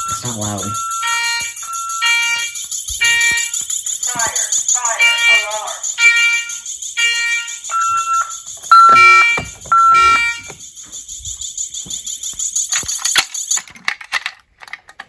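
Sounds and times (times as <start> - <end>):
fire alarm horns pulsing: 0.0 - 10.6
steady high-pitched tone: 0.0 - 11.4.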